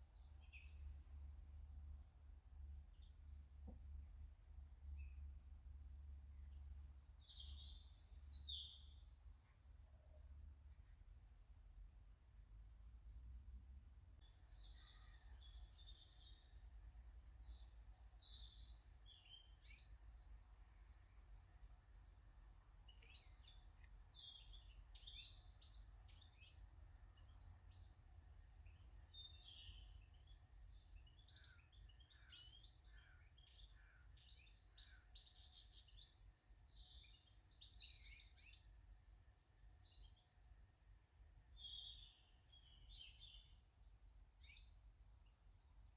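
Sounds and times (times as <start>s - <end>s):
small birds chirping: 0.0s - 45.9s.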